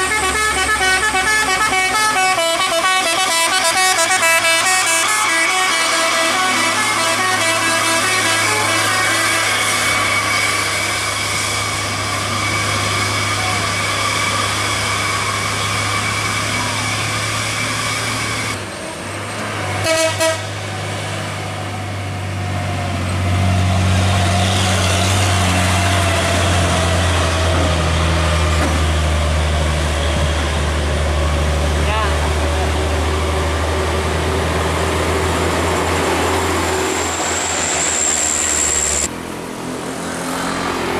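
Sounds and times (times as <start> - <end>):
truck horns multi-tone chord: 0.0 - 11.5, 19.8 - 20.7
diesel truck engine under load: 9.7 - 19.8, 20.5 - 40.9.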